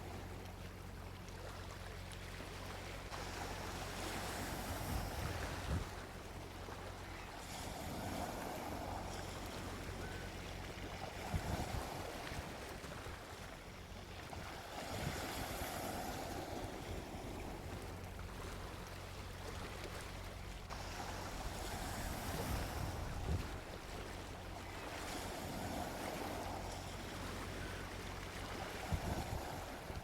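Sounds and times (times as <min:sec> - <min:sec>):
sea waves washing onto beach: 0:00.0 - 0:30.0
wind rumble on microphone: 0:03.2 - 0:06.4, 0:07.4 - 0:13.3, 0:14.1 - 0:18.1, 0:20.7 - 0:27.8, 0:28.4 - 0:30.0.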